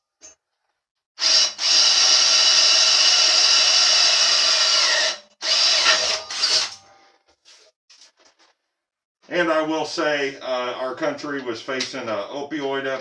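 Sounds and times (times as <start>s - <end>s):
electric drill drilling: 1.2s - 6.8s.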